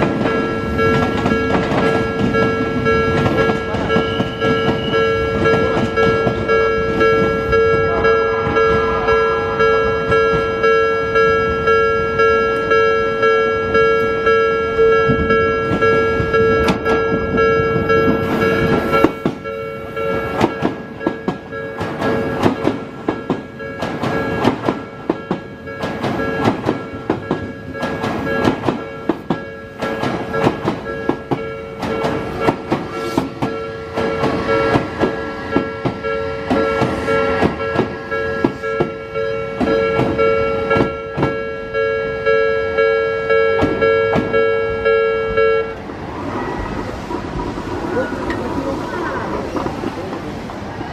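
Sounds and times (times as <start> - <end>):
train wheels clattering over joints: 0.0 - 8.9, 15.0 - 41.5
level-crossing alarm bell ringing: 0.0 - 45.8.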